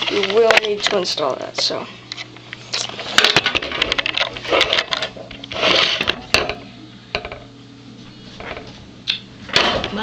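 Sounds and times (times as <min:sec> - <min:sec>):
scraping and rustling: 0:02.2 - 0:06.4, 0:08.1 - 0:08.9.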